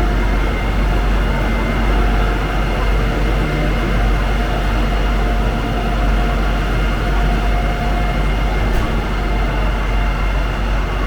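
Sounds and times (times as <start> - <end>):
street traffic rumble: 0.0 - 11.0.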